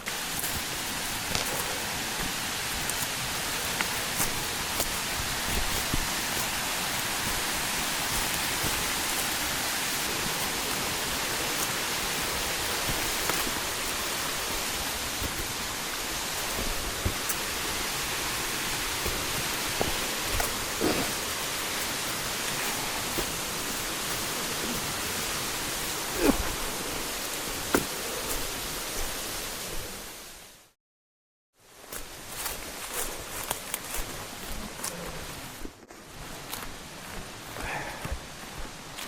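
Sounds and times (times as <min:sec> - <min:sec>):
mountain stream rushing: 0:00.0 - 0:30.6.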